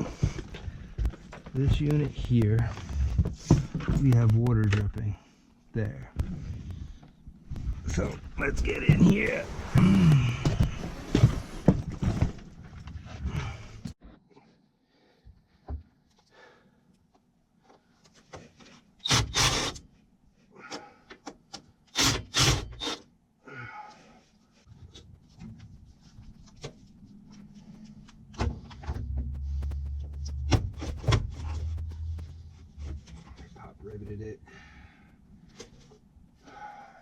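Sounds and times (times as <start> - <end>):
low hum: 26.8 - 35.5.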